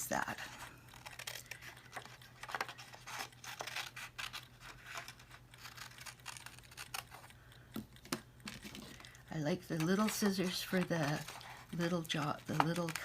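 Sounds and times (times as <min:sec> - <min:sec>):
scissors snipping cardstock: 0:00.9 - 0:13.0
paper rustling: 0:08.4 - 0:13.0.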